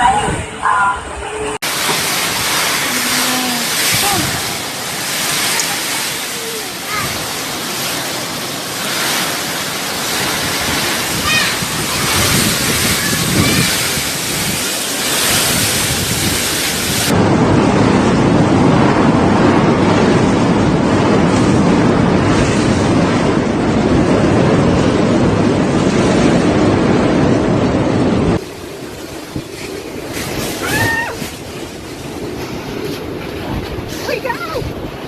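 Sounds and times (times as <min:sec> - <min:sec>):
wind rushing: 0:00.0 - 0:35.0
rain: 0:01.6 - 0:35.0.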